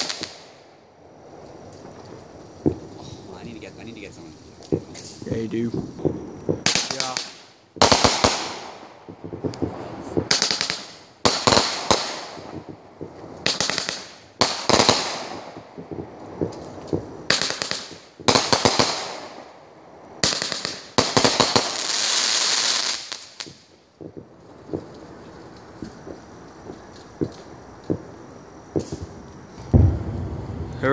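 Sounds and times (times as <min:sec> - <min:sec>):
fireworks bangs: 0:00.0 - 0:30.9
fireworks crackling: 0:00.0 - 0:30.9.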